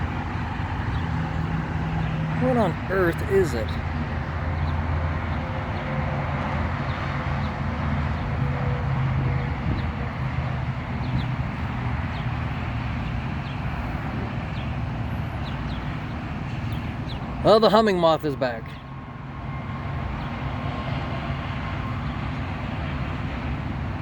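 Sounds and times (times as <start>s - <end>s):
traffic noise: 0.0s - 24.0s.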